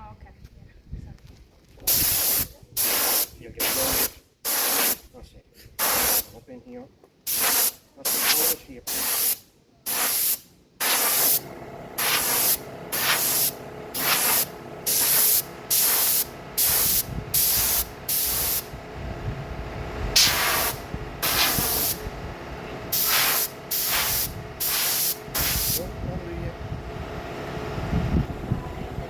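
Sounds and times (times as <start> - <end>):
paint spraying in hissing bursts: 1.9 - 5.0, 5.8 - 6.3, 7.3 - 18.8, 20.1 - 22.1, 22.9 - 25.9.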